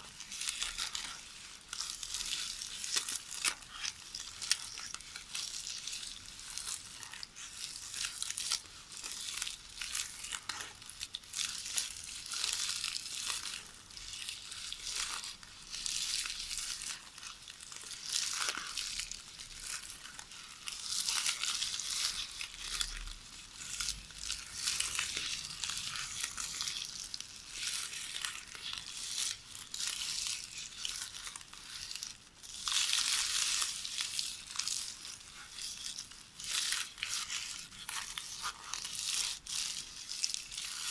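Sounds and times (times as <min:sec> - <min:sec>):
videotape ribbon rustling and crackling: 0:00.0 - 0:40.9.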